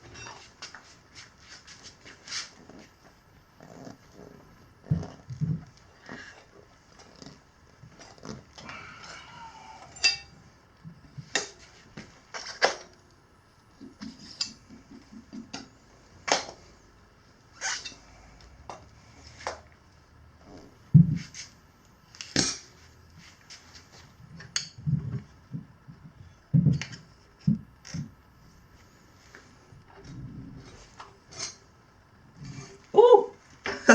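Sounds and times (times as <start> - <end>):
tire levers scraping on a rim: 17.5 - 19.7.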